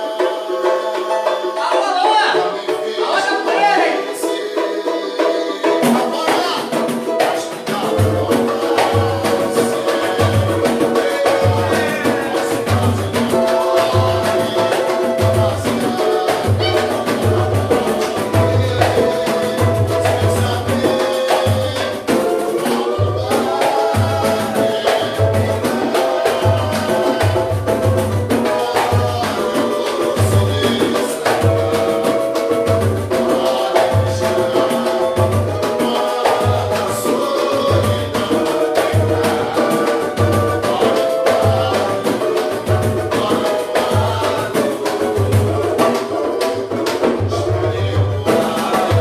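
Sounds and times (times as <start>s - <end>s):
hand percussion: 0.0s - 49.0s
samba band playing: 0.0s - 49.0s
deep drum beat: 5.9s - 33.3s.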